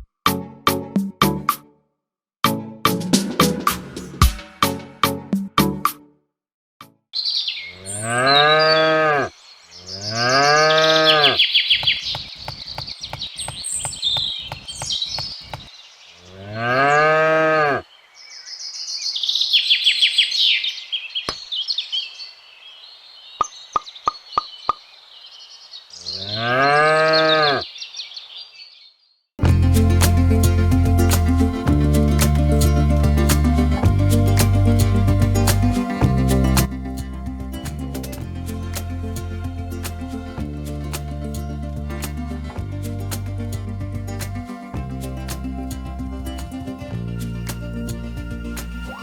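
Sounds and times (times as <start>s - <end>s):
birds chirping: 7.2s - 29.9s
cow mooing: 7.8s - 9.3s, 10.0s - 11.4s, 16.3s - 17.8s, 26.2s - 27.6s.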